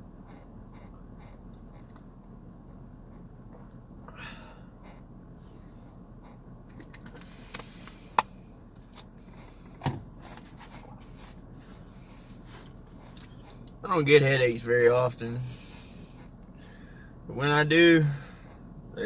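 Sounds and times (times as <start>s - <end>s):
low hum inside vehicle: 0.0s - 19.0s
soft rustle: 8.8s - 13.8s.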